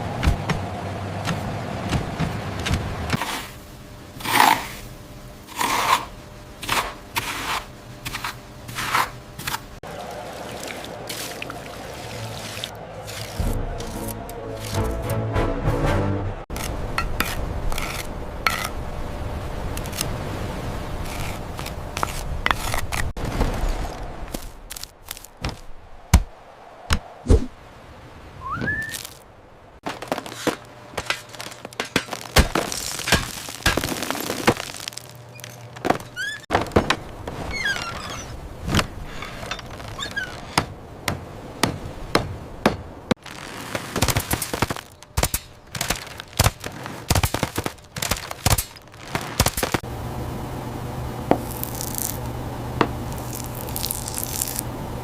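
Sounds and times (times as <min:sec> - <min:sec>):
short rising whistles: 0:28.4 - 0:29.0.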